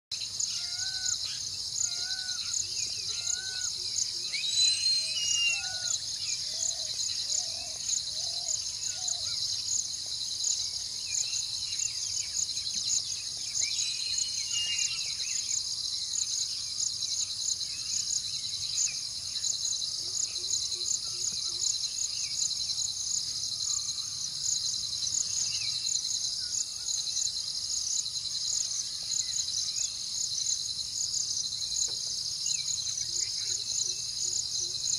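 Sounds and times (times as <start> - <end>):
bird calls: 0.2 - 9.7, 10.6 - 15.6.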